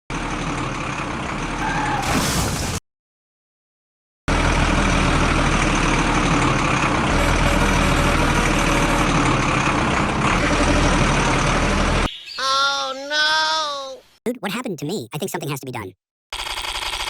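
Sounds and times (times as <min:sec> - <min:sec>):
vehicle engine running: 0:00.1 - 0:01.7, 0:04.3 - 0:12.1.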